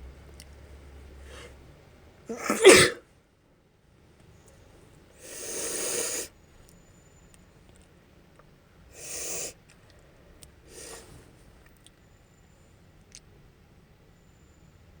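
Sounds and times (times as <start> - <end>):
woman breathing through runny nose: 5.2 - 6.4, 9.0 - 9.6, 10.7 - 11.2.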